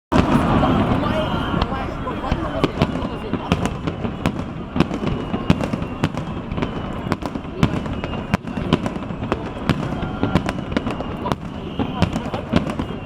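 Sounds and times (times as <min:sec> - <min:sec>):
fireworks bangs and cracks: 0:00.1 - 0:13.0.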